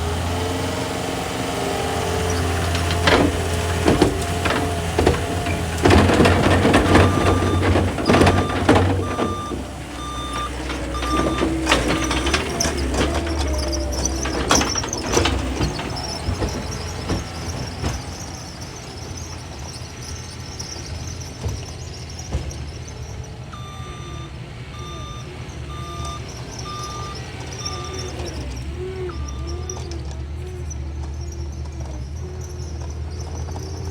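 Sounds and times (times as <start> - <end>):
diesel engine running: 0.0 - 33.9
metallic clanks and knocks: 2.4 - 18.4
back-up alarm beeping: 5.8 - 15.4, 23.5 - 29.9.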